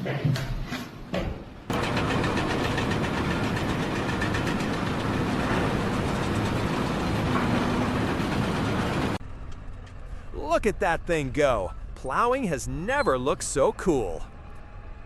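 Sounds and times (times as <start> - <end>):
rough engine running: 1.7 - 9.4.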